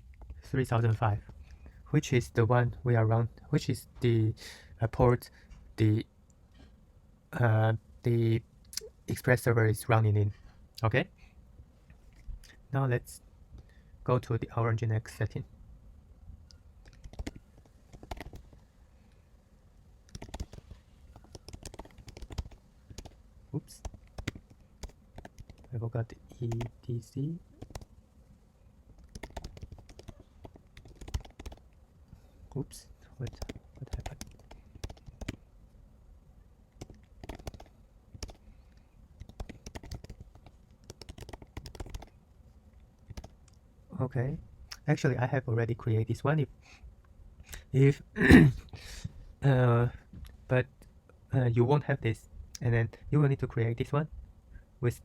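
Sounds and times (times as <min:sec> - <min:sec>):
typing on computer keyboard: 0:16.8 - 0:18.5, 0:20.1 - 0:23.2, 0:23.8 - 0:25.7, 0:26.4 - 0:26.8, 0:27.6 - 0:27.9, 0:29.0 - 0:31.6, 0:33.2 - 0:35.4, 0:36.8 - 0:38.4, 0:39.2 - 0:42.2, 0:43.0 - 0:43.4.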